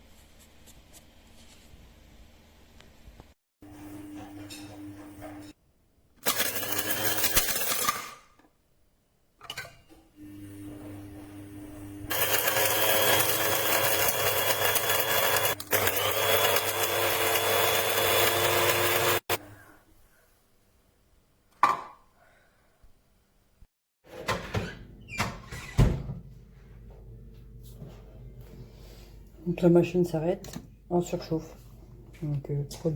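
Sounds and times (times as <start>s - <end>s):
coffee grinder running: 6.2s - 8.1s, 10.2s - 19.4s.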